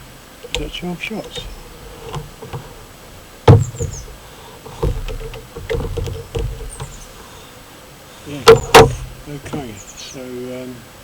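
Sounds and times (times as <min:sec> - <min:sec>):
small birds chirping: 0:00.0 - 0:10.8
air rifle handling knocks: 0:00.4 - 0:07.6, 0:08.2 - 0:09.7.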